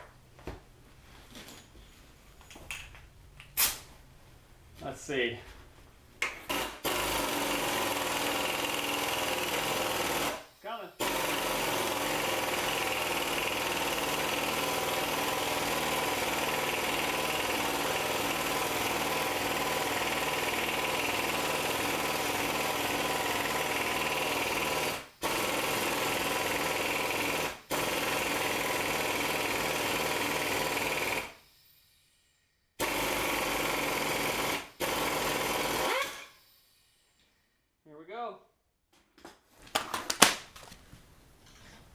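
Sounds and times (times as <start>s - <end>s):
impact wrench hammering: 6.2s - 10.3s.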